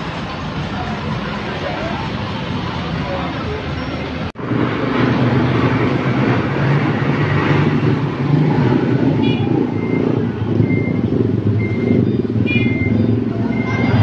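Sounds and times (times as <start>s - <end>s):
diesel engine humming: 0.0s - 14.0s
reversing alarm beeps: 9.2s - 14.0s.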